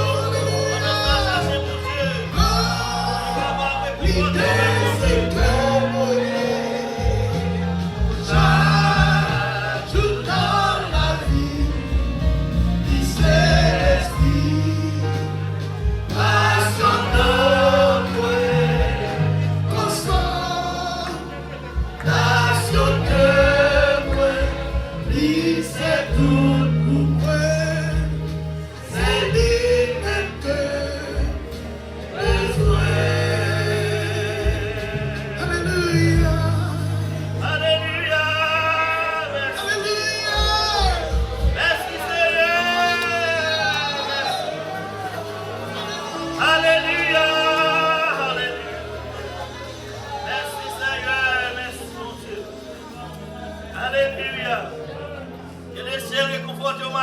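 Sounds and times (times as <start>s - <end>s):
steady bass notes and beat: 0.0s - 38.6s
choir singing gospel song: 0.0s - 57.0s.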